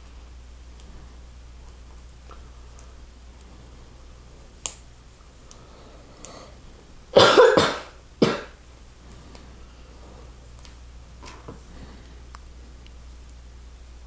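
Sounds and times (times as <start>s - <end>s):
person coughing: 7.2s - 8.6s.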